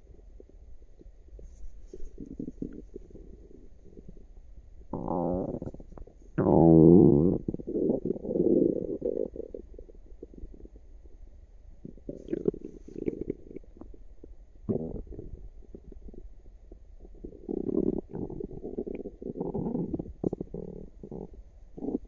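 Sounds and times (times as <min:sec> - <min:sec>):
stomach gurgling and rumbling: 0:00.0 - 0:22.0.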